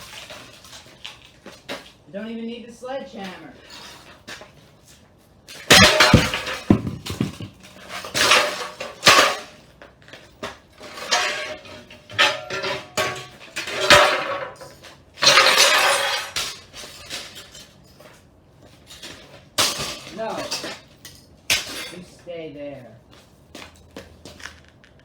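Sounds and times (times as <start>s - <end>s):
shattered glass crunching: 5.6s - 9.5s, 10.9s - 17.6s
metal panels clattering: 5.7s - 9.6s, 10.9s - 17.6s.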